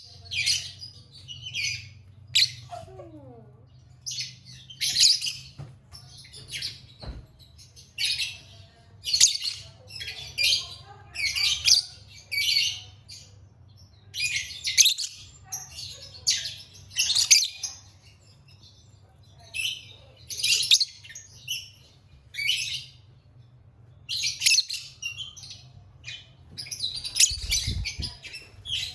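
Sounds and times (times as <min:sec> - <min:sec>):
lovebird chirping and chattering: 0:00.0 - 0:05.6, 0:07.8 - 0:13.4, 0:14.1 - 0:23.2, 0:24.1 - 0:28.9.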